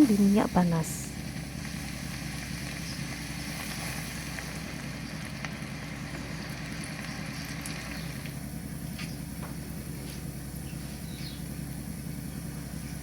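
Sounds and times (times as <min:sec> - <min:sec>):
fish frying in hot oil: 0:01.7 - 0:08.4.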